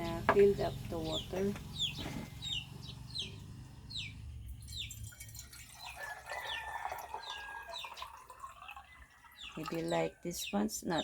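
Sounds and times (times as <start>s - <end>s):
bird chirping: 0.0s - 11.0s
water pouring into espresso maker: 4.9s - 9.8s.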